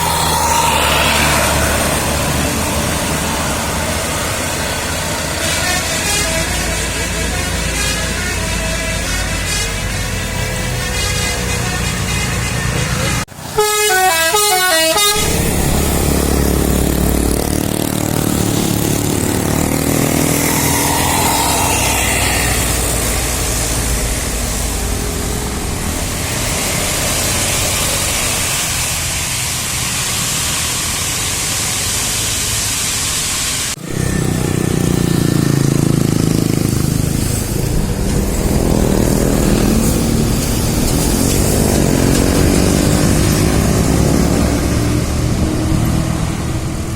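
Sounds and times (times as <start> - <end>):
bus engines: 0.0 - 46.9
traffic: 0.0 - 46.9
multi-tone air horn melody: 5.1 - 17.3, 18.1 - 25.6.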